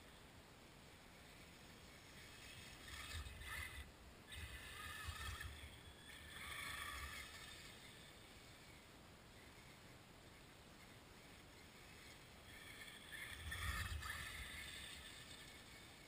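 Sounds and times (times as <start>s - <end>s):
faint motor whine: 0.0s - 16.0s.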